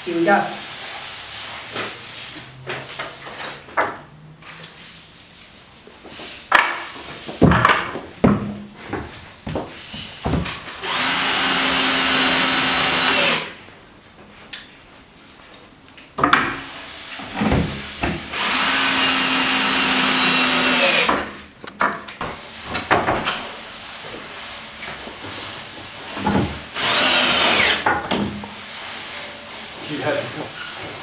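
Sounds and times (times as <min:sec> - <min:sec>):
power drill running: 0:10.8 - 0:13.6, 0:18.3 - 0:21.2, 0:26.8 - 0:27.8.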